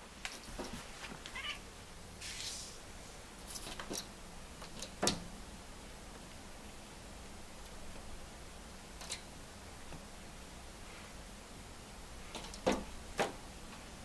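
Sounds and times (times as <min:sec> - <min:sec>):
cat meowing and chirping: 0:01.3 - 0:01.6.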